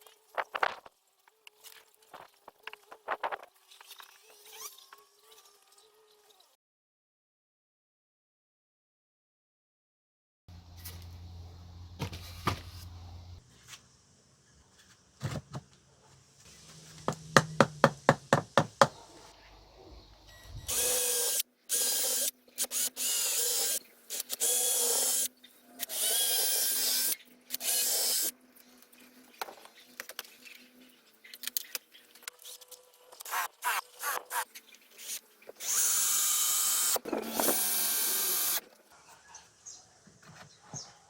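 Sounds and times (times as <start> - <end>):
power drill bursts: 20.7 - 28.3, 35.0 - 38.7.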